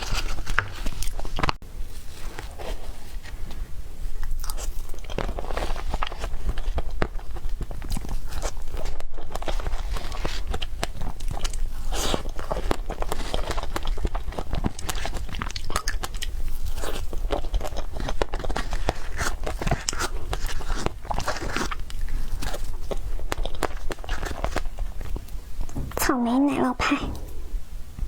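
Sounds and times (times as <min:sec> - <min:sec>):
person chewing with mouth clicks: 0:04.2 - 0:25.4.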